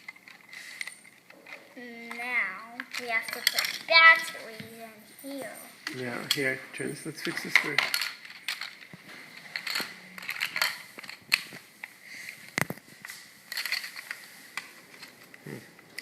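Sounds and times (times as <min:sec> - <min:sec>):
plastic clicks and rattles: 0:00.0 - 0:04.0, 0:07.2 - 0:16.0.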